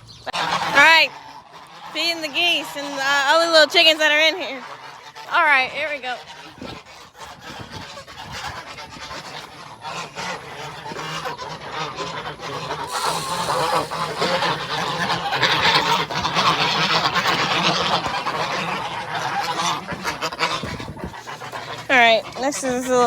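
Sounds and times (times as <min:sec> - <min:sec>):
geese honking: 0:10.0 - 0:19.9.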